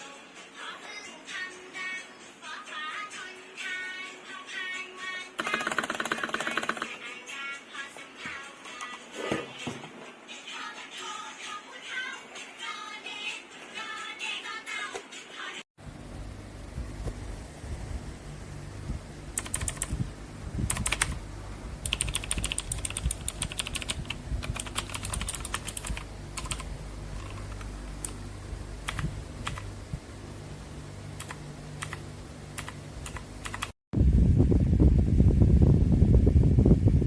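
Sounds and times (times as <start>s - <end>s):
mechanical keyboard typing: 5.4s - 7.0s, 19.4s - 20.0s, 20.7s - 21.2s, 21.8s - 28.2s, 28.8s - 29.7s, 31.2s - 32.0s, 32.6s - 33.8s.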